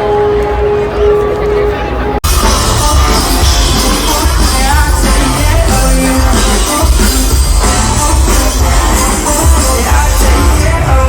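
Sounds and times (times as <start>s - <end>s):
live concert music: 0.0s - 11.0s
heavy pounding bass: 2.2s - 11.0s
person singing: 2.3s - 11.0s.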